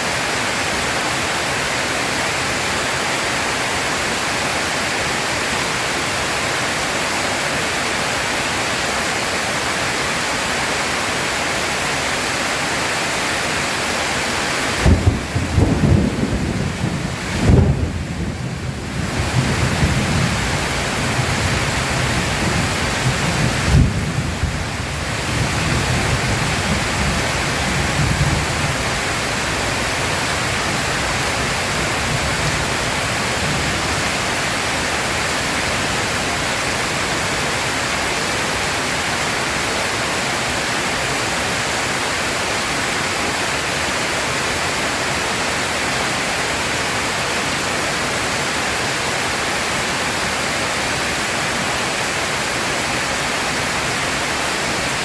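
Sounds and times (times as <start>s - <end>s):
heavy rain pouring: 0.0s - 55.0s
low thunder rumble: 14.8s - 34.2s.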